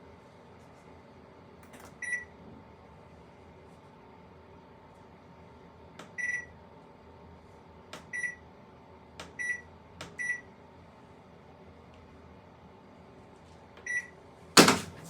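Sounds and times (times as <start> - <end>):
washer-dryer humming: 13.8 - 15.0.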